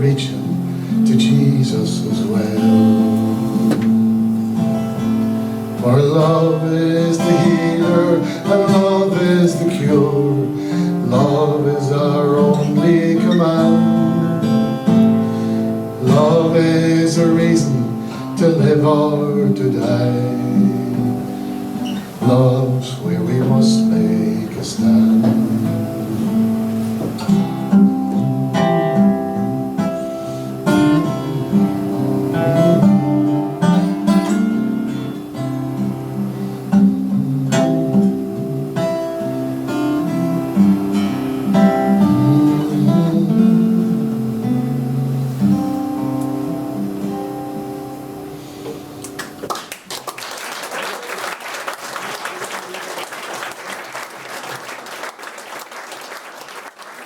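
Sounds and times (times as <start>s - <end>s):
acoustic guitar playing: 0.0s - 49.6s
audience applause: 49.0s - 57.0s.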